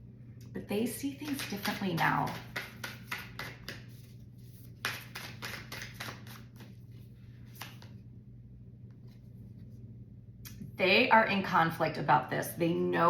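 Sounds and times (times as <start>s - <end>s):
cards being shuffled: 1.2s - 8.0s.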